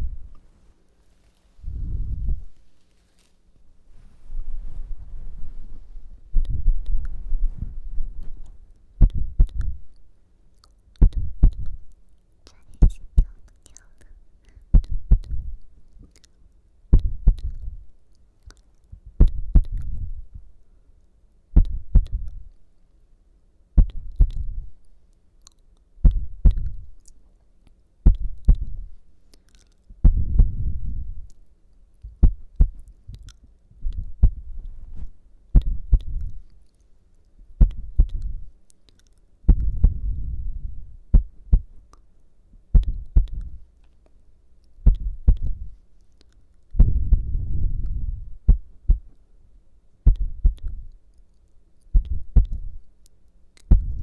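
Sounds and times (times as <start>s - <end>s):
heartbeat thumps: 0.0s - 0.4s, 1.6s - 2.6s, 3.9s - 10.0s, 11.0s - 11.9s, 14.7s - 15.7s, 16.9s - 17.9s, 19.0s - 20.5s, 21.6s - 22.5s, 23.8s - 24.8s, 26.0s - 27.0s, 28.0s - 29.0s, 30.0s - 31.3s, 32.1s - 36.5s, 37.5s - 38.6s, 39.4s - 41.8s, 42.7s - 43.7s, 44.8s - 45.8s, 46.8s - 49.2s, 50.0s - 51.0s, 52.0s - 52.9s, 53.7s - 54.0s.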